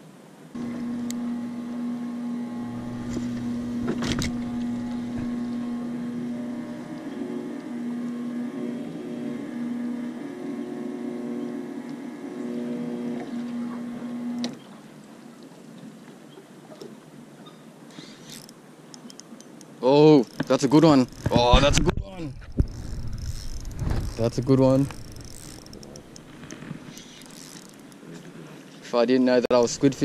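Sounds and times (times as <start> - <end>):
motorboat engine running: 0.6 - 14.7, 20.2 - 28.0.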